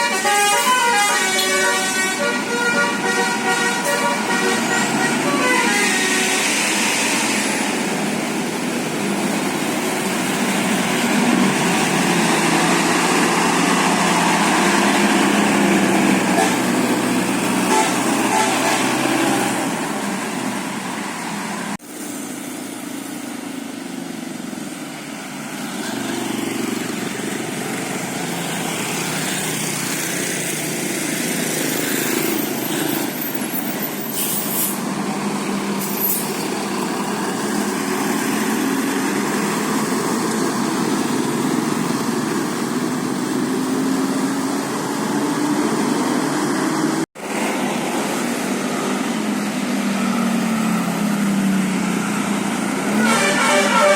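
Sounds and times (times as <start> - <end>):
diesel engines of passing vehicles: 0.0 - 53.9
air brakes hissing: 31.6 - 34.9.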